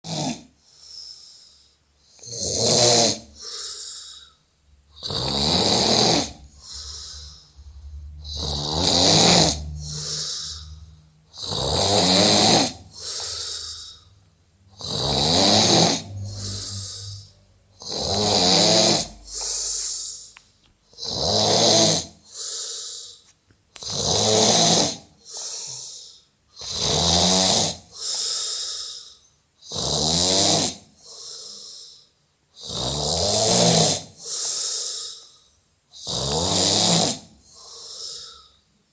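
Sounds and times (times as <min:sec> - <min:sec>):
loud snoring: 0:00.0 - 0:00.5, 0:02.2 - 0:03.6, 0:05.0 - 0:20.1, 0:20.9 - 0:22.3, 0:23.8 - 0:25.1, 0:26.6 - 0:28.0, 0:29.6 - 0:31.0, 0:32.6 - 0:34.4, 0:36.0 - 0:37.6
soft breath: 0:03.4 - 0:04.5, 0:06.4 - 0:08.7, 0:09.5 - 0:11.2, 0:12.8 - 0:14.8, 0:15.9 - 0:17.6, 0:37.4 - 0:38.7.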